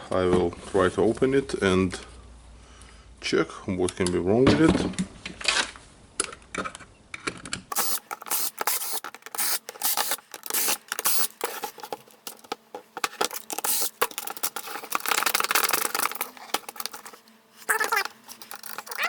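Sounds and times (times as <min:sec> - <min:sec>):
plastic and metal parts scraping: 0:07.7 - 0:19.0.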